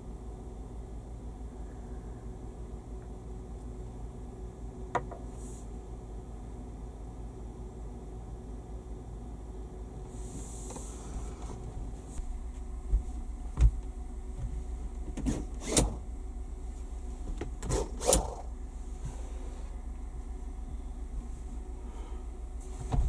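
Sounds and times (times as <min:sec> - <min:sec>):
steady low hum: 0:00.0 - 0:23.0
sharp knocks and clunks: 0:12.9 - 0:15.8, 0:22.8 - 0:23.0.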